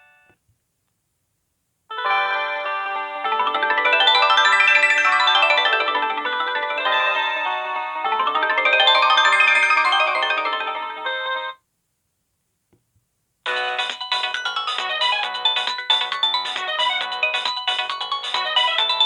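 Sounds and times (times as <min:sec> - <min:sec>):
phone ringtone melody: 0:01.9 - 0:11.6, 0:13.5 - 0:19.0.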